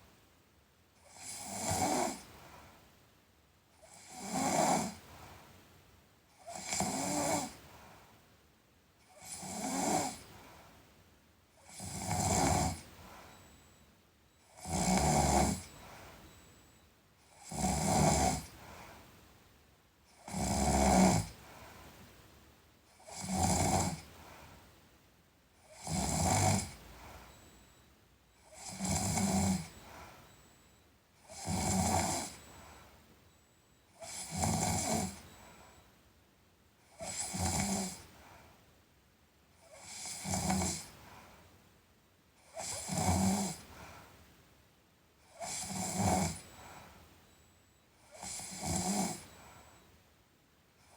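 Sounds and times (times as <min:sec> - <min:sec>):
faint breath: 0:02.2 - 0:03.0, 0:05.0 - 0:05.7, 0:07.4 - 0:08.4, 0:10.0 - 0:11.0, 0:11.6 - 0:14.4, 0:15.5 - 0:17.4, 0:18.4 - 0:19.5, 0:21.2 - 0:22.4, 0:24.0 - 0:25.0, 0:26.0 - 0:36.0, 0:37.9 - 0:38.8, 0:40.8 - 0:41.7, 0:43.5 - 0:44.4, 0:45.4 - 0:50.0
person snoring: 0:06.5 - 0:07.6, 0:09.1 - 0:10.3, 0:11.7 - 0:12.9, 0:14.6 - 0:15.8, 0:17.3 - 0:18.5, 0:20.3 - 0:21.3, 0:23.0 - 0:24.1, 0:25.7 - 0:27.2, 0:28.5 - 0:29.8, 0:31.3 - 0:32.4, 0:34.0 - 0:35.3, 0:37.0 - 0:38.0, 0:39.7 - 0:40.9, 0:42.6 - 0:43.6, 0:45.4 - 0:46.4, 0:48.2 - 0:49.3.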